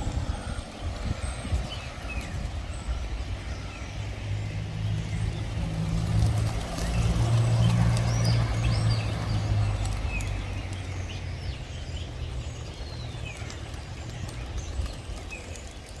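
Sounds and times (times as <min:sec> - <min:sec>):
birds chirping: 0:00.0 - 0:16.0.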